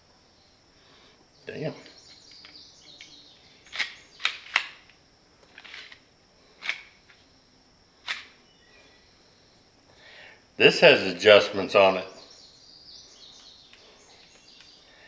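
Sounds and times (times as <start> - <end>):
hedge trimmer attachment clicking: 3.7 - 6.0.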